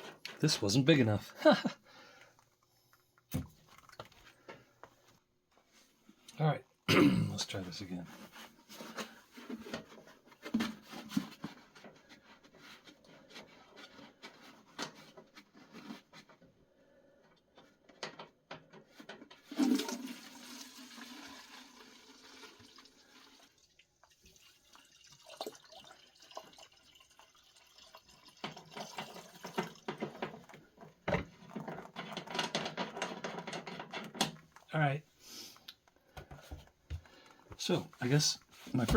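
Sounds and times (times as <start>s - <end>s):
small knocks and clatter: 2.4s - 5.8s, 7.7s - 16.5s, 17.4s - 19.5s, 28.3s - 34.7s, 35.8s - 38.9s
liquid pouring and splashing into tub: 19.4s - 32.2s.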